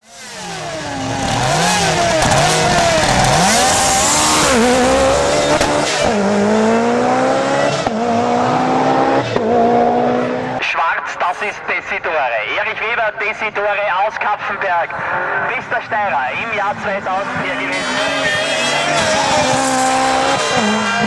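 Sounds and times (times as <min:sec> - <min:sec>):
car engine accelerating through gears: 0:00.0 - 0:10.6, 0:17.2 - 0:21.0.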